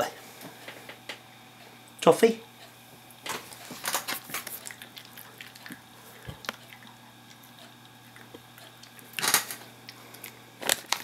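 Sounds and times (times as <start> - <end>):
dog chewing toffee: 3.5 - 9.2.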